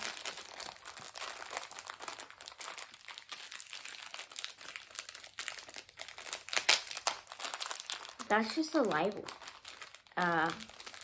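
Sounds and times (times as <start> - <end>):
plastic wrapper crinkling: 0.0 - 11.0.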